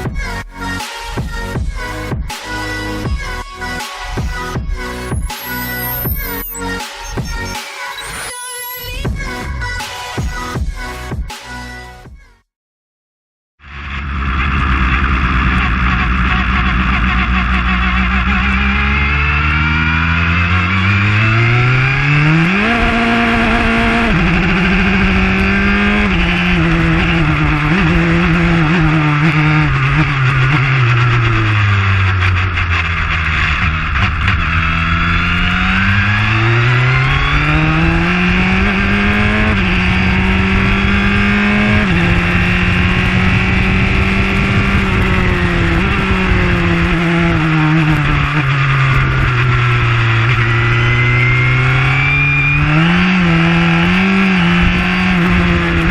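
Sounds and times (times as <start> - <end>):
racing car engine revving: 13.7 - 55.9
wind rush: 37.6 - 49.4.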